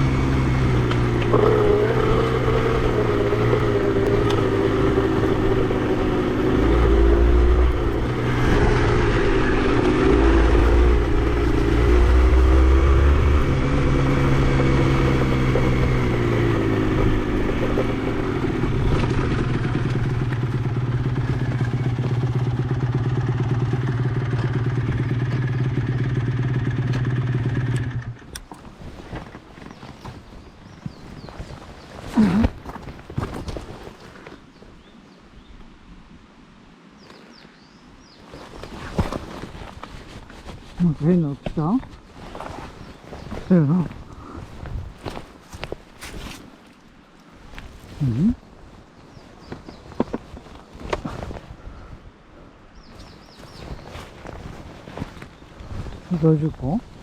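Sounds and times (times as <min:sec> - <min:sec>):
two-stroke motorcycle engine running: 0:00.0 - 0:28.3.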